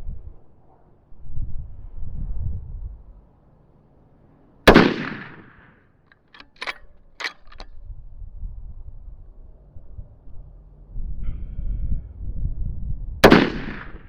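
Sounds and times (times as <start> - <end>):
rifle shot: 4.7 - 7.6, 13.2 - 14.0
rifle bolt metallic clicks: 6.1 - 7.8.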